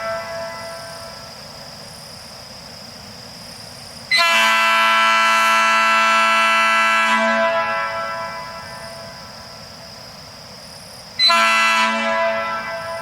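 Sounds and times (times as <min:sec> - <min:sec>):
train horn blast: 0:00.0 - 0:01.2, 0:04.1 - 0:09.2, 0:11.2 - 0:13.0.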